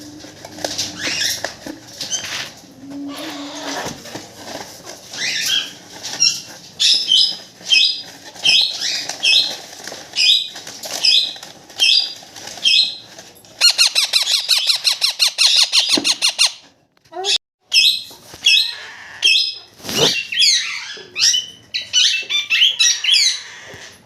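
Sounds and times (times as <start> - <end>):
parakeet chick squawking: 17.2 - 23.9.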